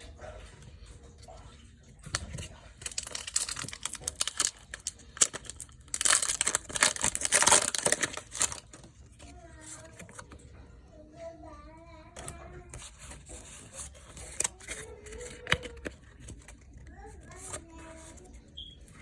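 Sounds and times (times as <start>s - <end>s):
foil wrapper crinkling and tearing: 2.2s - 9.0s.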